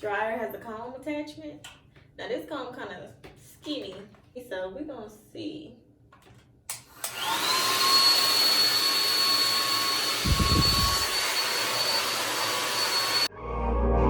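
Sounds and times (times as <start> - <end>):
hair dryer blowing: 6.7 - 13.3.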